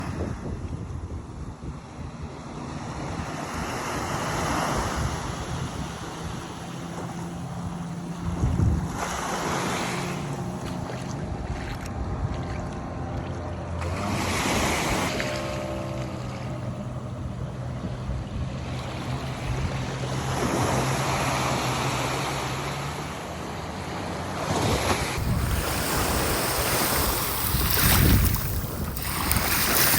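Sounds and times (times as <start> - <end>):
wind buffeting microphone: 4.2 - 13.0, 25.2 - 29.9
sea waves washing onto beach: 24.8 - 29.9
steady low hum: 25.2 - 29.9.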